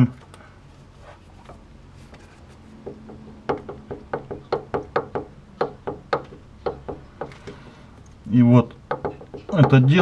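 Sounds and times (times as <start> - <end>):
suspension link knocking: 2.6 - 10.0.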